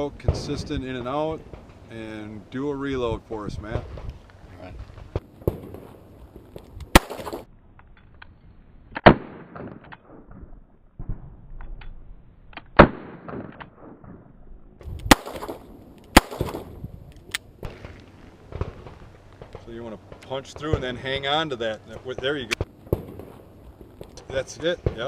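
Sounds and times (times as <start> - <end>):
gunshots: 5.0 - 6.1, 6.9 - 7.5, 9.0 - 11.4, 12.7 - 14.3, 15.1 - 16.8, 22.0 - 25.0
clicks and handling noise: 14.8 - 20.3.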